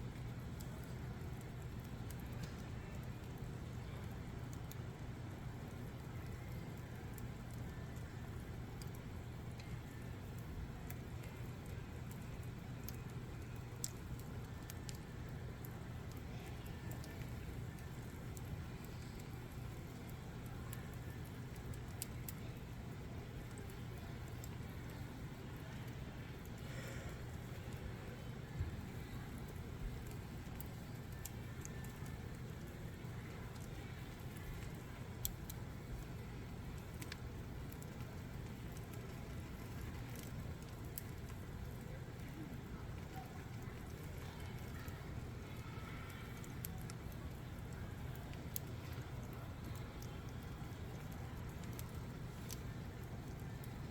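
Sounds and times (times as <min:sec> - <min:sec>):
low fire rumble: 0:00.0 - 0:53.9
campfire wood crackling and popping: 0:00.1 - 0:53.9.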